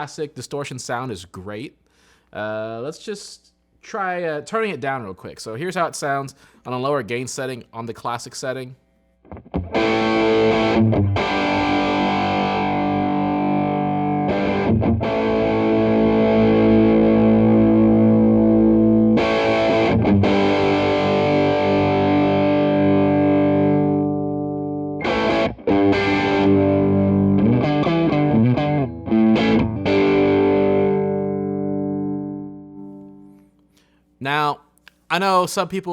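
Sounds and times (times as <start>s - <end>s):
distorted electric guitar chords: 9.2s - 33.4s.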